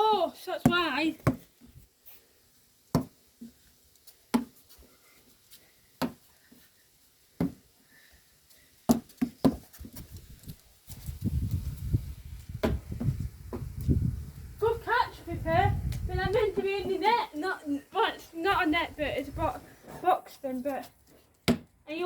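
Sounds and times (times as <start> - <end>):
rough low rumbling noise: 11.2 - 17.0.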